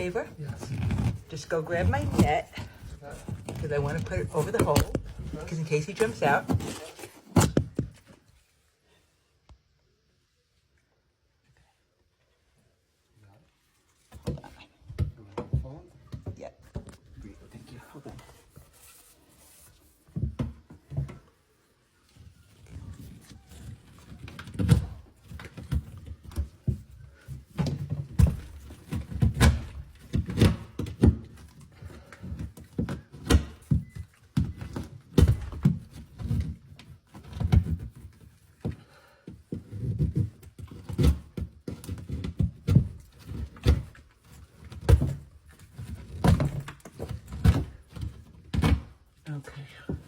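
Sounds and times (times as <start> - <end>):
thuds and knocks: 0.0 - 8.2, 24.5 - 38.8, 39.5 - 49.1.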